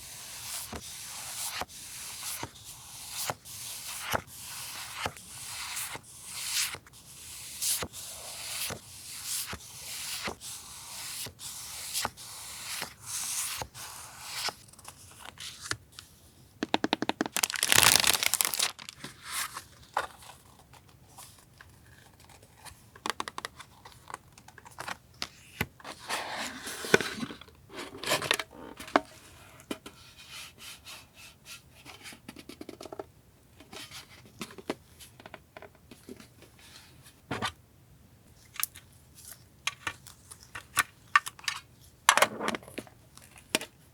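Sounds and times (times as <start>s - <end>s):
paper rustling and crinkling: 17.2s - 25.0s
paper tearing: 17.4s - 18.9s.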